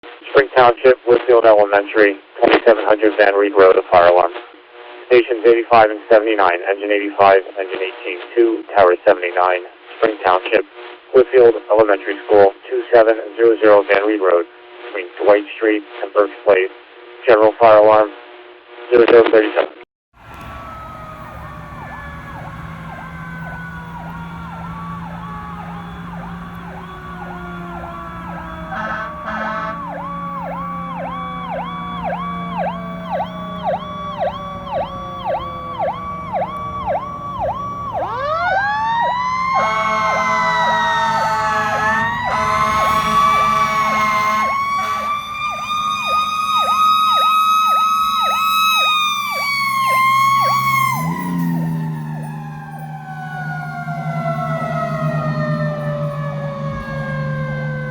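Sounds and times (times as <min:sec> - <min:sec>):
air horn blasts: 0:20.2 - 0:38.8, 0:39.4 - 0:45.7
fire engine siren wailing: 0:20.2 - 0:57.9
siren yelping: 0:20.2 - 0:57.9.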